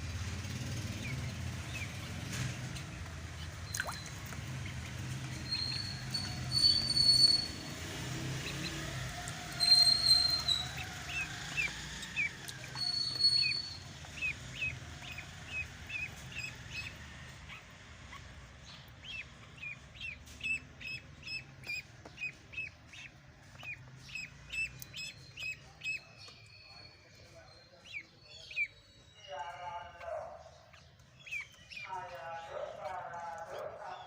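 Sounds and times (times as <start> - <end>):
duckling peeping: 1.0 - 34.0.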